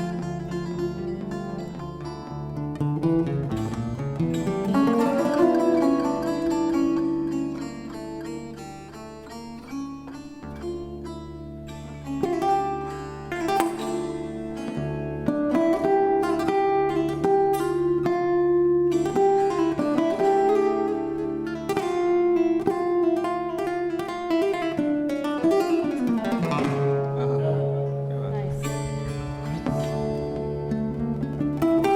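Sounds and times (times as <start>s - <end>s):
acoustic guitar plucked and strummed: 0.0s - 31.9s
sustained bass line: 27.1s - 31.8s.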